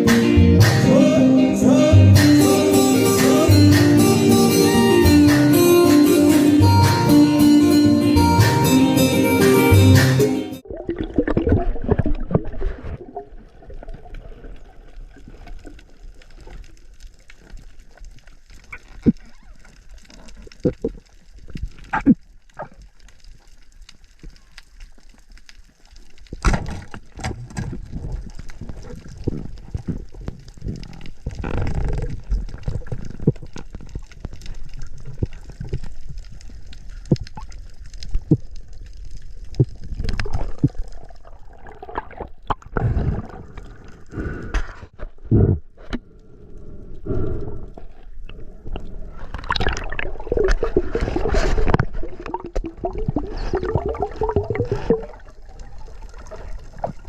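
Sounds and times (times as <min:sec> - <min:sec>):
water gurgling and sloshing: 0:10.6 - 0:24.1, 0:25.7 - 0:57.0.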